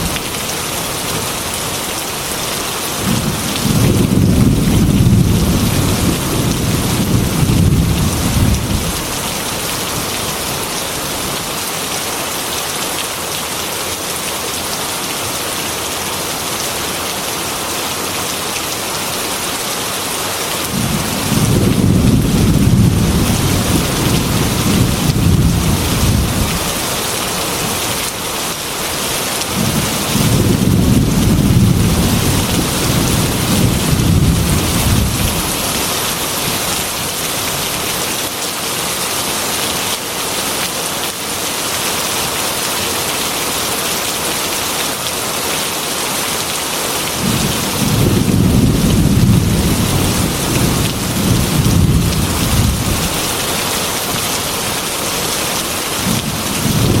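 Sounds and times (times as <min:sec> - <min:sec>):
heavy rain on metal roof: 0:00.0 - 0:57.0
thunder rumbling: 0:03.0 - 0:10.2, 0:20.7 - 0:26.9, 0:29.5 - 0:36.6, 0:47.2 - 0:53.2, 0:56.0 - 0:57.0.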